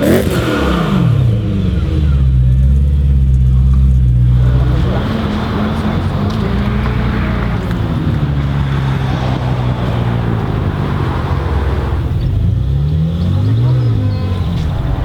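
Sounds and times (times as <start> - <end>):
supercharged car engine revving: 0.0 - 15.0.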